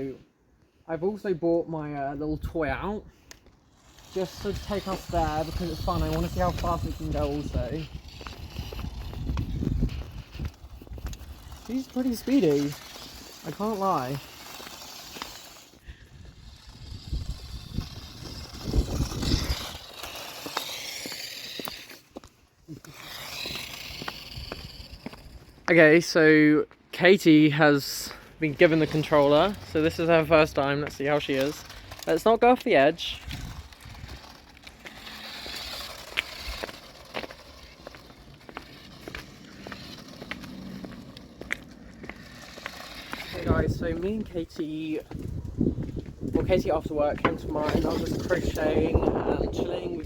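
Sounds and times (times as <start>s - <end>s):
outdoor street noise hiss: 0.0s - 50.0s
toy car motor whining: 2.2s - 26.2s, 27.3s - 50.0s
footsteps on pavement: 3.2s - 11.9s, 17.5s - 25.7s, 28.3s - 49.4s.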